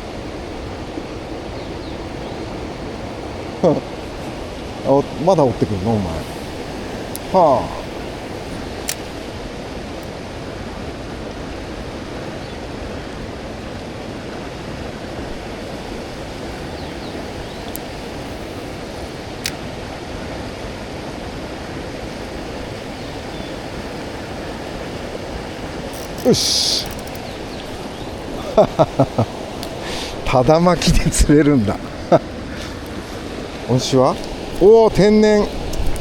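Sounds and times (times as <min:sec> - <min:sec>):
stream water rushing: 0:00.0 - 0:36.0
sharp click: 0:08.8 - 0:09.1, 0:26.0 - 0:27.2.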